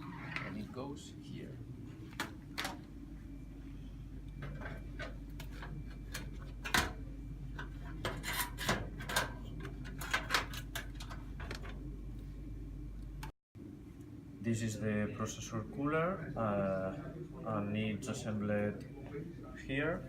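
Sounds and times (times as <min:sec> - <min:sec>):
low electrical hum: 0:00.0 - 0:20.0
computer parts clicking and knocking: 0:04.4 - 0:07.0, 0:07.6 - 0:11.8.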